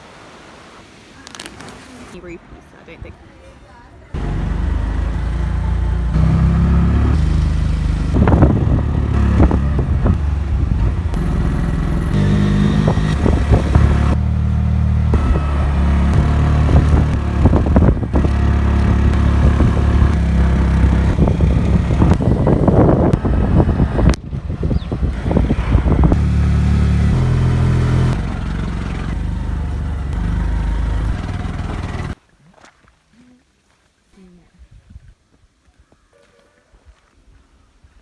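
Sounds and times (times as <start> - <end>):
vehicle engine running: 4.1 - 32.2.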